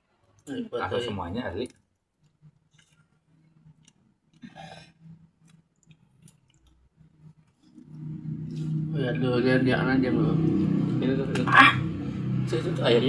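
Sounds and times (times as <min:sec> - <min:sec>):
low steady hum: 0:00.0 - 0:13.0
close-up chewing with mouth clicks: 0:02.2 - 0:04.4, 0:05.4 - 0:07.9.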